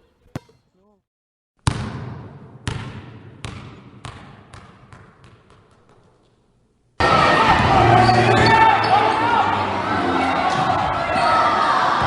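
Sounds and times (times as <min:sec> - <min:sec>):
basketball bouncing on wooden floor: 0:00.2 - 0:00.6.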